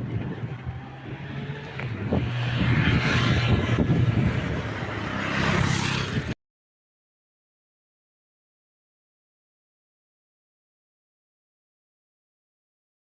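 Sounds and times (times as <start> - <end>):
road and wind noise: 0.0 - 6.4.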